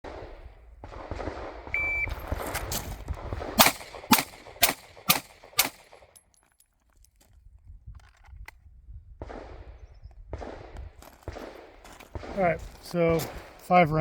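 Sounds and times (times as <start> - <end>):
pistol shots: 0.0 - 6.2, 9.2 - 14.0
shot timer beep: 1.8 - 2.2.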